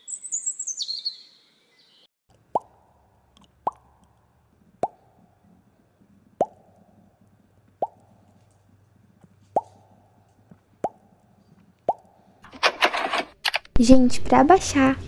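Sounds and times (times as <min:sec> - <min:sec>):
cartoon plop pop: 0:02.5 - 0:02.9, 0:03.6 - 0:03.9, 0:04.8 - 0:05.1, 0:06.4 - 0:06.7, 0:07.8 - 0:08.1.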